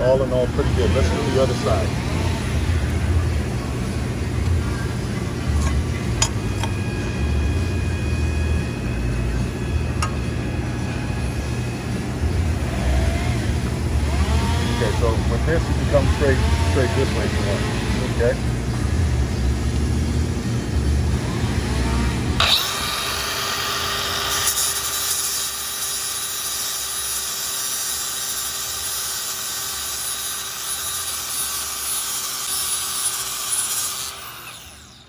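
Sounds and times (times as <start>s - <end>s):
angle grinder grinding steel: 0.0s - 3.2s, 12.5s - 18.4s, 21.2s - 35.0s.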